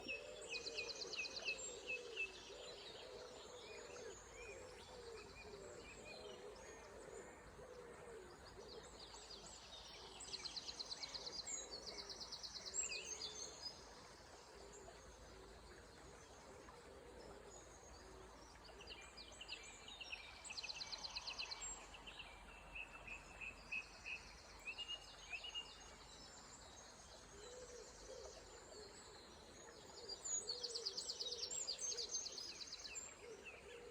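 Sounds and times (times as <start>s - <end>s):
songbirds trilling and twittering: 0.0s - 33.9s.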